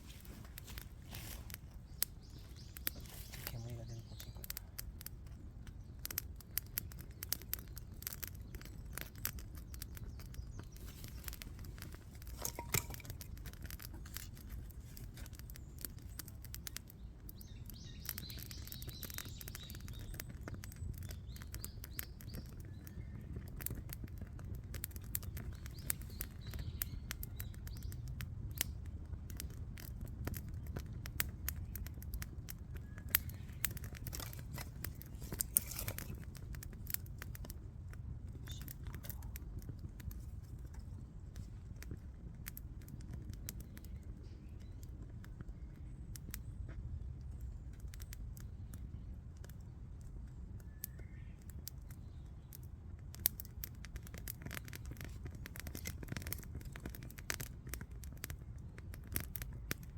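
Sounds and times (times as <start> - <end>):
birds chirping: 0.1 - 23.4, 38.3 - 39.5.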